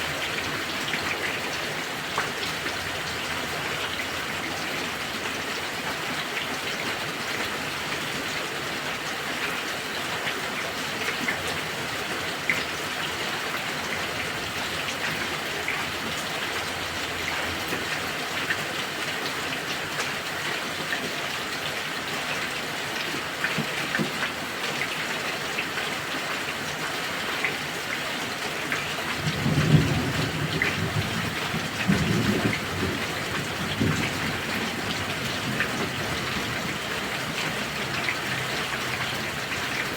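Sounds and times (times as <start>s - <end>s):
heavy rain pouring: 0.0s - 39.9s
raindrops pattering on a surface: 0.0s - 39.9s
thunder rumbling: 29.2s - 36.8s.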